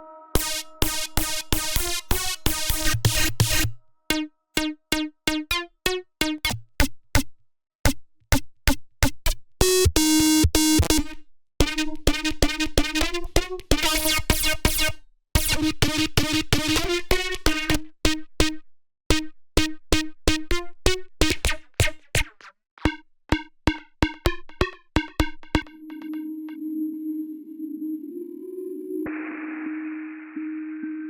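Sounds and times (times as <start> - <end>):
held synthesizer tone: 0.0 - 1.6
repeating synthesizer notes: 0.0 - 6.6, 9.6 - 14.8, 15.4 - 21.6, 22.8 - 27.2.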